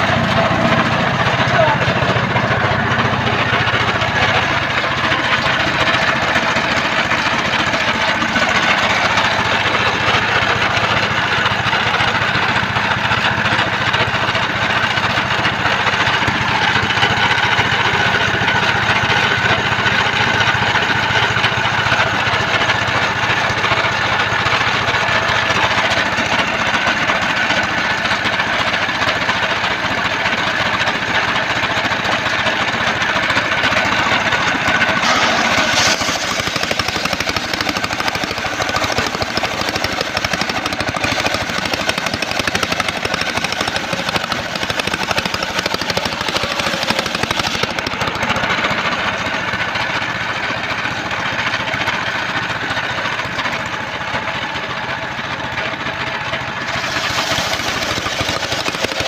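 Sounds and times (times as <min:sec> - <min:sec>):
sawmill engine running: 0:00.0 - 0:59.0.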